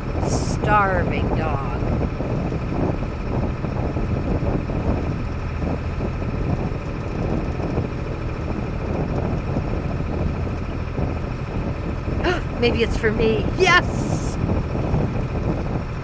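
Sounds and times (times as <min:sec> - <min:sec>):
wind noise on microphone: 0:00.0 - 0:12.6.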